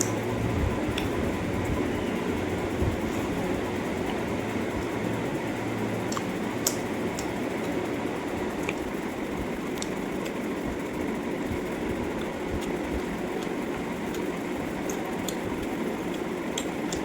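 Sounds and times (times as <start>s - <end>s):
person eating clicks and smacks: 0.0s - 0.3s, 0.9s - 1.2s, 6.0s - 7.8s, 8.4s - 9.0s, 9.6s - 10.5s, 11.3s - 17.0s
steady rumbling background: 0.0s - 17.0s.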